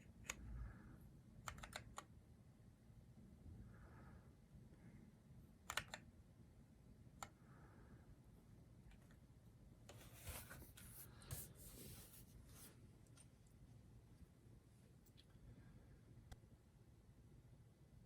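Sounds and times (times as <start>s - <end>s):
mechanical keyboard clicks: 1.4s - 2.1s, 5.7s - 6.0s
rustling handling noise: 9.9s - 13.4s.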